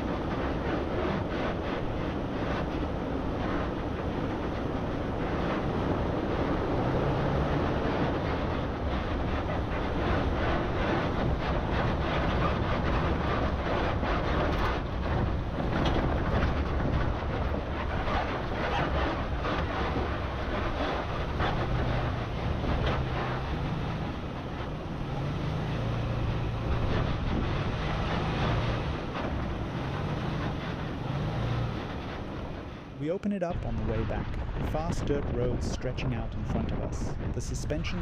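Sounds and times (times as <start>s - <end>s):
wind on microphone: 0.0s - 33.0s, 33.6s - 38.0s
off-road vehicle engine: 0.0s - 38.0s
rattles and knocks: 8.3s - 32.7s.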